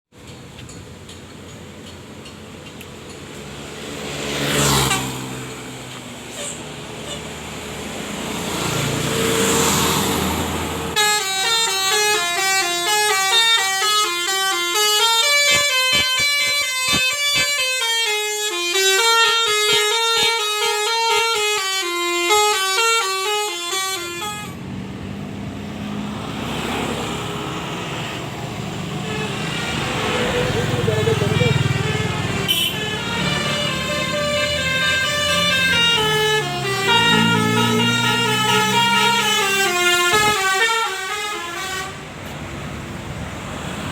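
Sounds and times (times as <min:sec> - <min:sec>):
engine and street noise: 0:00.1 - 0:43.9
bus horn playing a melody: 0:04.4 - 0:05.7, 0:10.8 - 0:24.7, 0:28.9 - 0:42.3.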